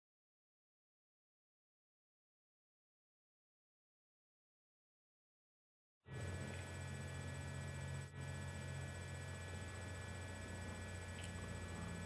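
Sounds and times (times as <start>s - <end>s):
low electrical hum: 6.1s - 12.0s.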